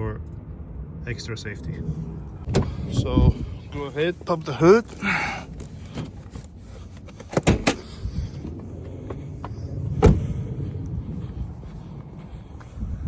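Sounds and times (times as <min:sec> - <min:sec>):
hood latch clicks: 0:07.2 - 0:07.8.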